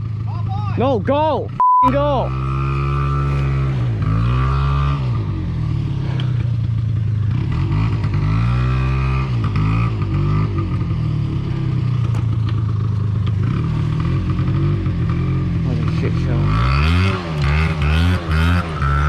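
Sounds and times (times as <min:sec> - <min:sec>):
engine revving hard: 0:02.0 - 0:06.4, 0:07.3 - 0:10.8, 0:13.4 - 0:19.0.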